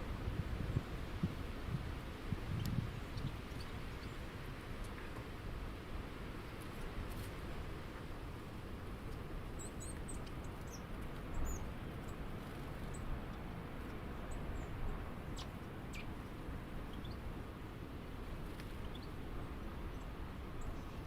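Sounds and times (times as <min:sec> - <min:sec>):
outdoor background hiss: 0:00.0 - 0:21.0
small birds chirping: 0:02.4 - 0:04.3, 0:09.1 - 0:17.3, 0:18.4 - 0:21.0.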